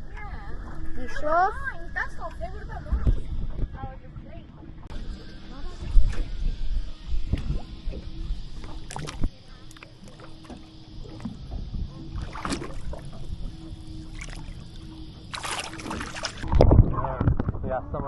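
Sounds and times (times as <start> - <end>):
water slapping against hull: 7.2 - 17.7.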